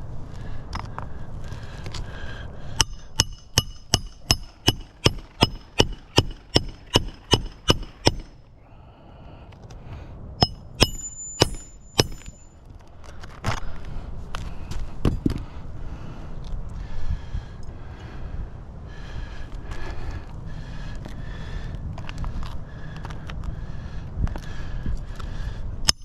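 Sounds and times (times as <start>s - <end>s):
hammer striking nail: 2.8s - 8.4s, 10.4s - 12.4s.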